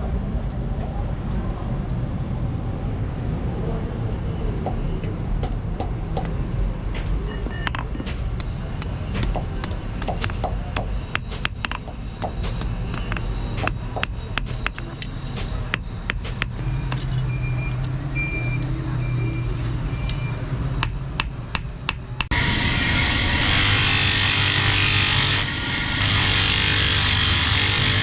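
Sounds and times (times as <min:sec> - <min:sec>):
low hum: 0:22.3 - 0:27.8
power tool grinding metal: 0:22.3 - 0:28.0.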